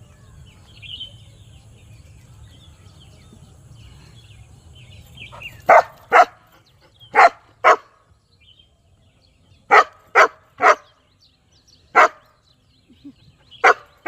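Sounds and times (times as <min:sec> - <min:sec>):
dog barking: 0:05.4 - 0:06.4, 0:07.1 - 0:07.9, 0:09.7 - 0:10.9, 0:12.0 - 0:12.2, 0:13.6 - 0:13.9.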